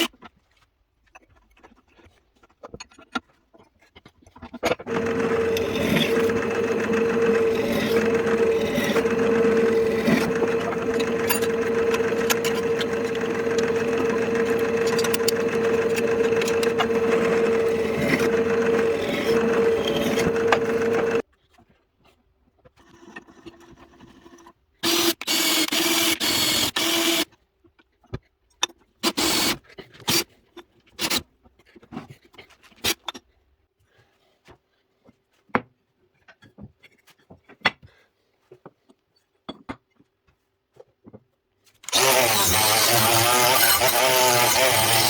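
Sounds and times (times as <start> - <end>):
clicks and knocks of parts: 4.8 - 21.2, 41.9 - 45.0
power tool running: 4.9 - 21.2, 41.9 - 45.0.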